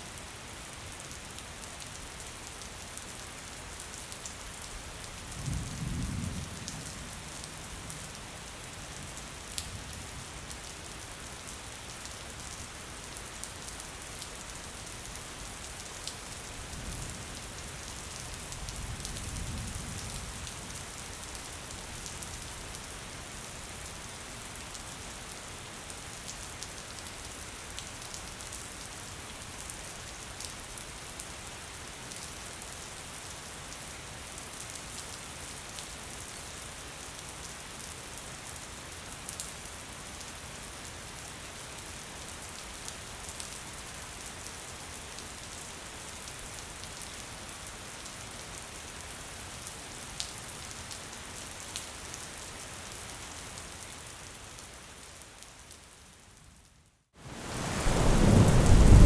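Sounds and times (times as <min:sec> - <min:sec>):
rain falling on a surface: 0:00.0 - 0:59.0
low rumble: 0:57.4 - 0:59.0.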